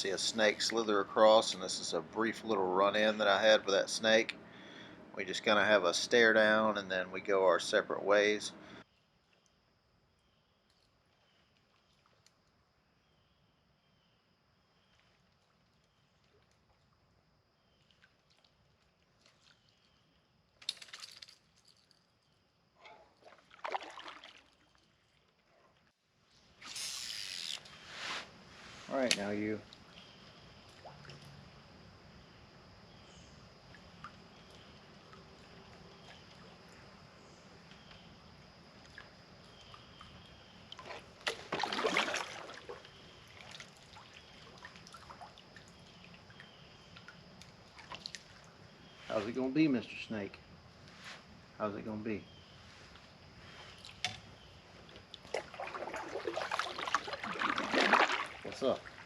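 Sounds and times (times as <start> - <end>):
water splashing at a kayak: 23.0 - 25.9, 38.7 - 48.9, 53.7 - 59.0.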